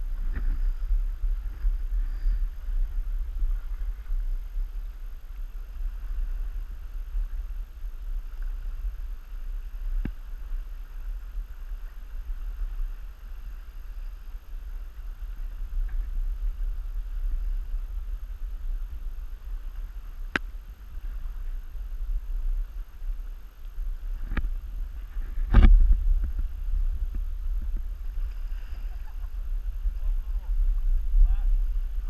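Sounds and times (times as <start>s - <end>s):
faint steady hiss: 0.0s - 32.0s
wind buffeting microphone: 0.0s - 32.0s.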